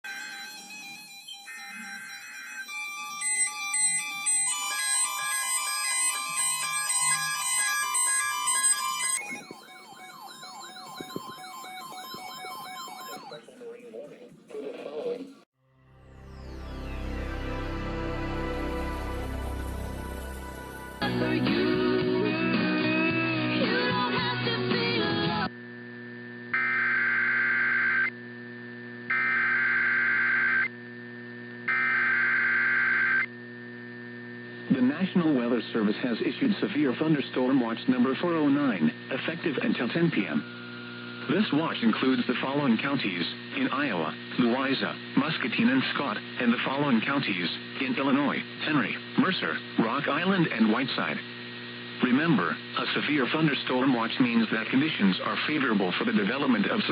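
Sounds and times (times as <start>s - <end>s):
electronic siren yelping: 0.0s - 13.4s, 26.5s - 28.1s, 29.1s - 30.7s, 31.7s - 33.3s
electronic melody: 0.0s - 13.6s, 15.7s - 22.6s
digital data tone bursts: 0.1s - 13.6s, 26.5s - 28.1s, 29.1s - 30.7s
electrical mains hum: 25.5s - 56.9s.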